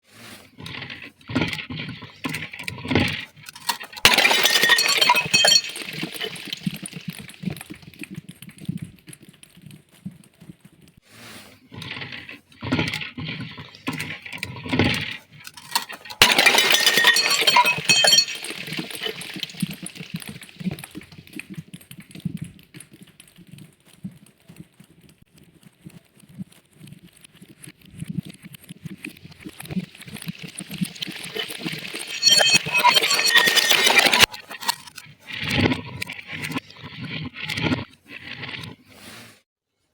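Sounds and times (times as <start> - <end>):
glass cracking and crunching: 1.6 - 8.0, 12.7 - 21.4, 29.1 - 38.7
glass bottles shattering: 2.0 - 7.6, 12.8 - 21.0, 30.0 - 36.6
tinkling glass: 2.2 - 7.7, 13.8 - 21.1, 30.0 - 36.6.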